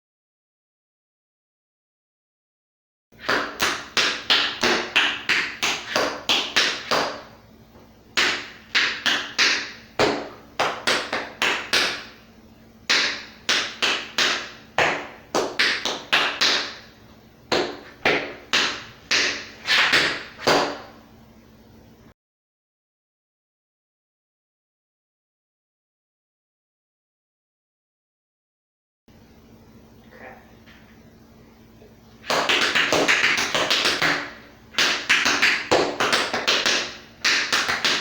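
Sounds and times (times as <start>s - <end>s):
tap shoes on hard floor: 17.5s - 20.9s, 32.2s - 38.0s.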